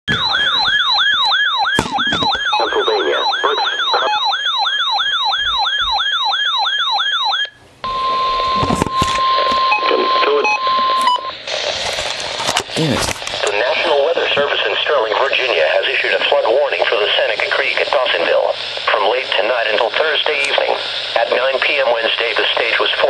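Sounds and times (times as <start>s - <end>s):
radio static: 0.1s - 4.3s, 8.3s - 23.0s
steady warning tone: 0.1s - 11.4s
warbling electronic alarm siren: 0.1s - 11.4s.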